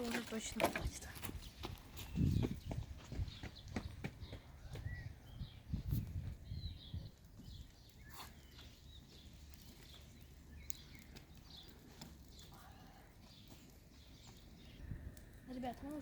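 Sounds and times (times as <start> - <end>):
faint bird chirps: 3.4 - 15.1.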